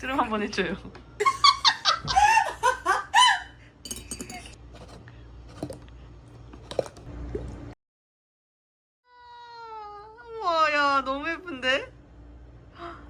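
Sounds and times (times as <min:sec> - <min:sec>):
person laughing: 0:01.2 - 0:03.6.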